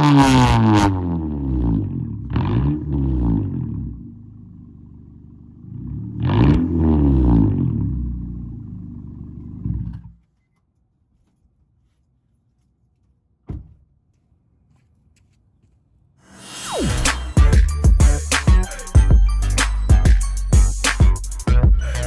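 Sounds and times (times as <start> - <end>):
car engine idling and revving: 0.0 - 10.2.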